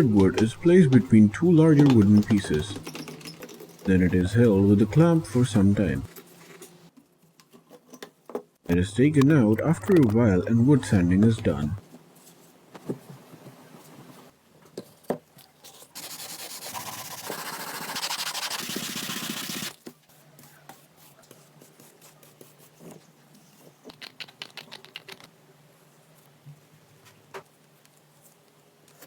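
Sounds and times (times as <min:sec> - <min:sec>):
wood being sanded: 0:16.0 - 0:19.7.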